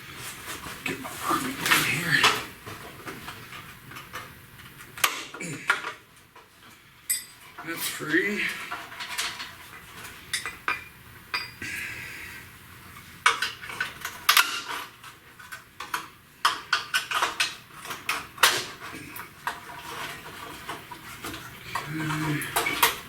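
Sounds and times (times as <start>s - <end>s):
metal parts clinking and rattling: 8.5s - 11.5s, 13.2s - 23.0s.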